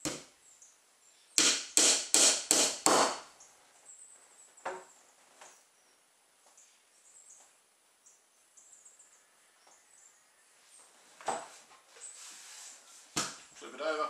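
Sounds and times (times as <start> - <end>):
hammer driving nails into wood: 1.4 - 3.2.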